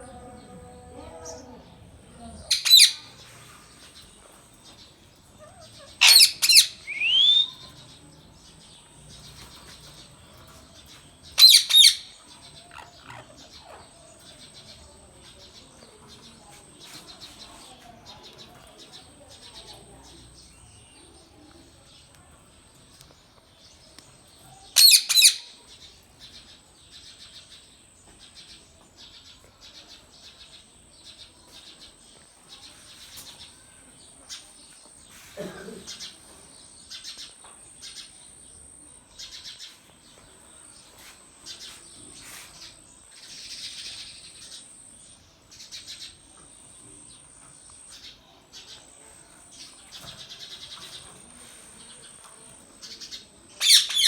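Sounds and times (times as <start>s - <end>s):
parrot screeching and chirping: 2.5s - 3.1s, 5.4s - 7.5s, 11.4s - 12.1s, 24.8s - 25.4s, 53.6s - 54.0s.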